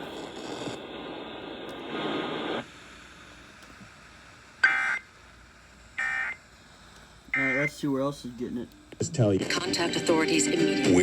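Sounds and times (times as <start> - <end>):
radio audio: 0.0 - 2.6, 7.3 - 11.0.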